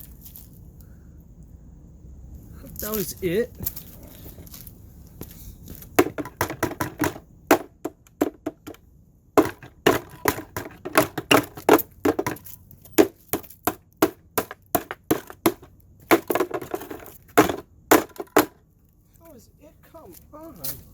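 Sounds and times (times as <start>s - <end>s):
blows crushing plastic housing: 5.9s - 8.8s, 9.4s - 18.6s.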